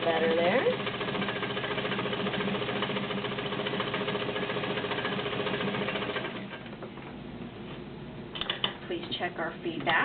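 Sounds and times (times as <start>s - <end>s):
sewing machine running: 0.0s - 6.7s.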